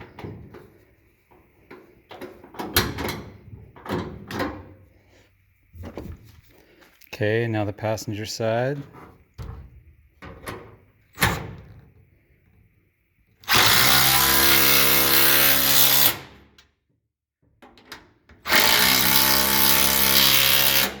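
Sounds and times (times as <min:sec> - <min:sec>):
impact wrench running: 0:13.4 - 0:16.2, 0:18.5 - 0:21.0.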